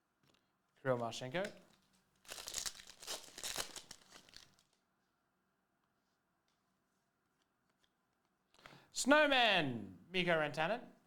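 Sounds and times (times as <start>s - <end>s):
card packaging crinkling and tearing: 1.7s - 4.8s.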